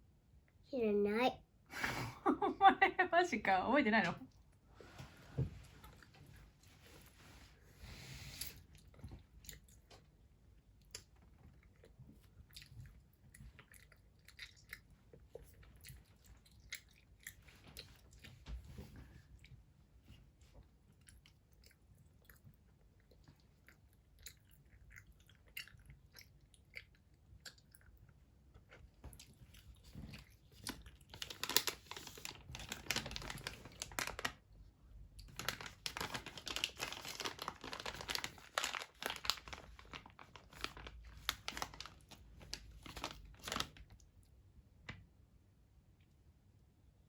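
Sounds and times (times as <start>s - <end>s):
wet chewing of gummy candy: 8.3s - 34.0s.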